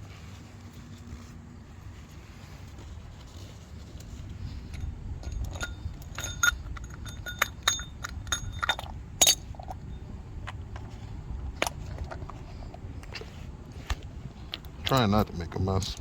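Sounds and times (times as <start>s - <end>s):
metal tools clinking: 4.5s - 10.1s.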